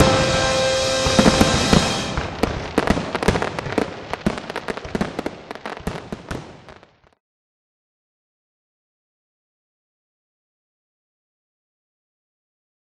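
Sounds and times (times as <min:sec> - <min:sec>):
music soundtrack chord: 0:00.0 - 0:02.5
fireworks bangs and crackles: 0:00.0 - 0:07.2.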